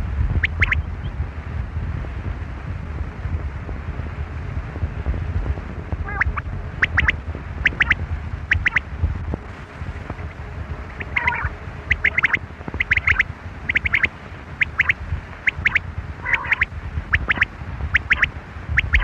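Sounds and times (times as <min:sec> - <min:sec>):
low rumble: 0:00.0 - 0:19.0
quail calling: 0:00.4 - 0:00.9, 0:06.1 - 0:08.8, 0:10.9 - 0:19.0.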